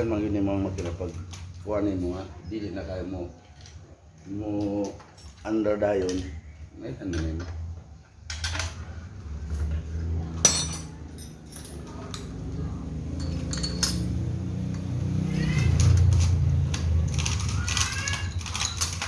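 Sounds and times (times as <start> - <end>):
hand tools clinking on metal: 10.4 - 19.0.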